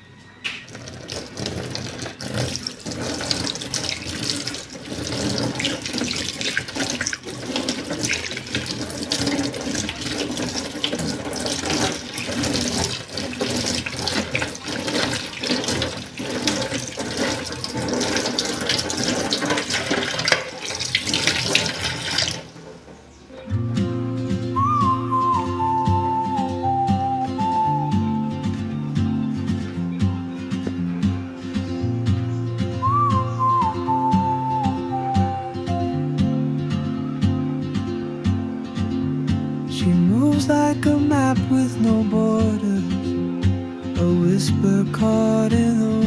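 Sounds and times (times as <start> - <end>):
water running and splashing: 0.7 - 22.9.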